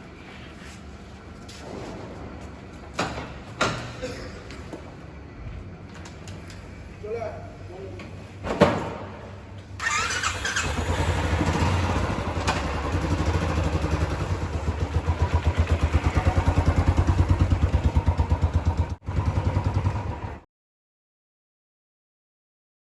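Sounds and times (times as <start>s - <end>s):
motorcycle engine running: 9.8s - 20.4s.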